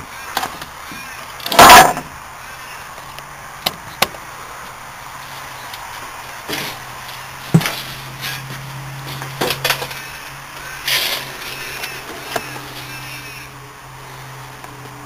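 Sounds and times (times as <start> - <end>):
metal scrap scraping clatter: 10.8 - 12.9.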